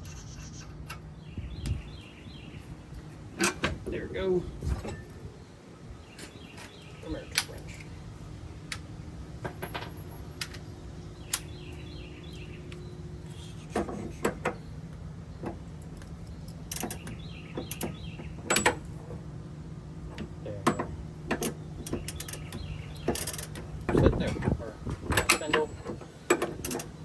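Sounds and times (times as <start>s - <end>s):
steady low hum: 0.0s - 27.0s
metal tools clinking and clanking: 3.4s - 3.9s, 4.6s - 5.2s, 15.7s - 19.2s, 20.1s - 27.0s.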